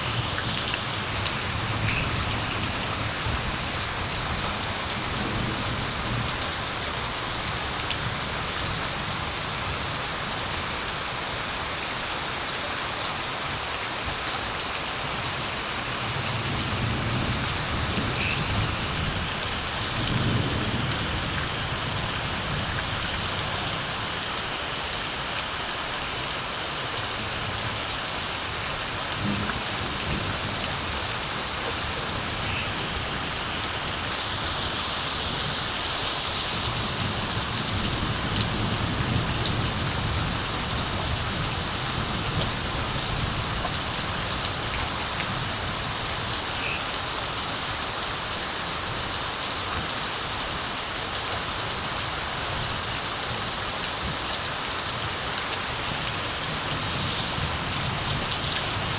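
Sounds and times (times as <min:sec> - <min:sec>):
distant thunder rumble: 0:00.0 - 0:07.0, 0:29.0 - 0:34.1
steady rain falling: 0:00.0 - 0:58.9.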